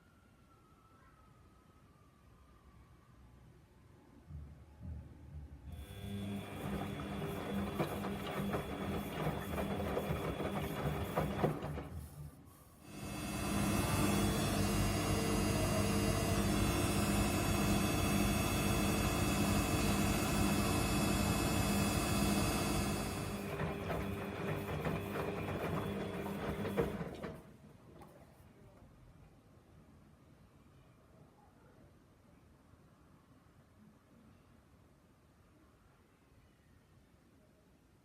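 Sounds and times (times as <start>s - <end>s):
washing machine motor humming: 5.7s - 12.3s, 12.9s - 27.5s.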